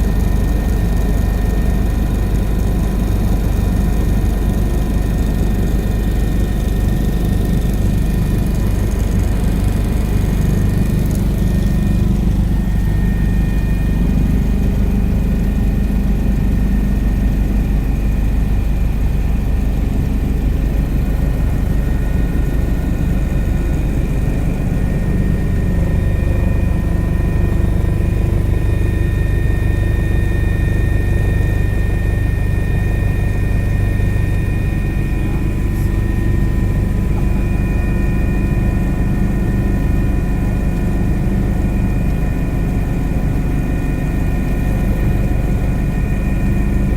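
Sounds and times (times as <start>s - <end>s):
helicopter rotor and engine rumble: 0.0s - 46.9s.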